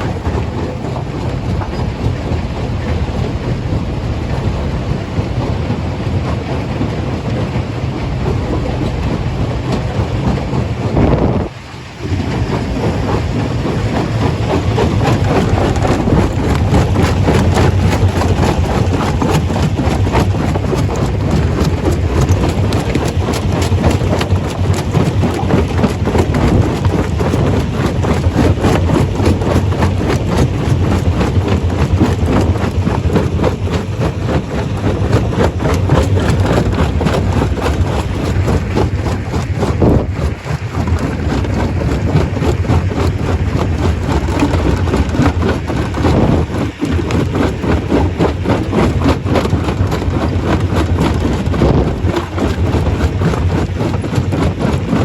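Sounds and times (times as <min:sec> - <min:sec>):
rattling clatter: 0:00.0 - 0:55.0
stone crusher engine drone: 0:00.0 - 0:55.0.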